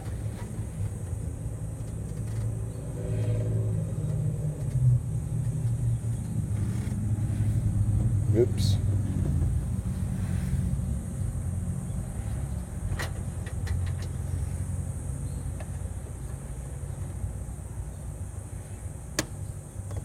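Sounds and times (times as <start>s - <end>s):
truck engine idling: 4.0s - 18.5s.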